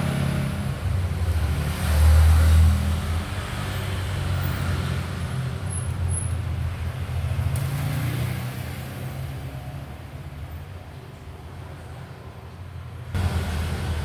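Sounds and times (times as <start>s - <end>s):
vehicle engine running: 0.0s - 0.9s, 13.2s - 14.0s.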